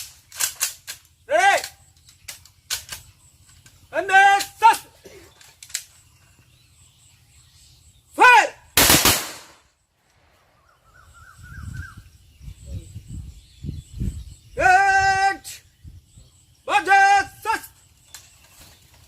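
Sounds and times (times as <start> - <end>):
person shouting a command: 1.3 - 1.8, 3.9 - 5.0, 8.2 - 8.6, 14.6 - 15.6, 16.7 - 17.8
rifle volley: 8.8 - 9.7.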